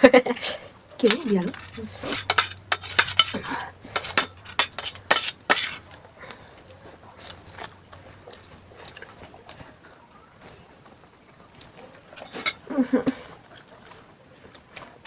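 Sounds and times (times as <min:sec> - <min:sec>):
cutlery clinking against dishes: 0:01.0 - 0:06.0, 0:12.1 - 0:12.8.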